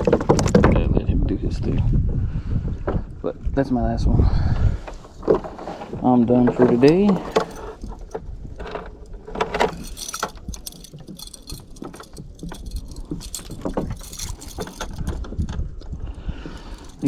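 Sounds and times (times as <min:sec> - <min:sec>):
gear and fish handled on kayak: 0:04.8 - 0:17.0.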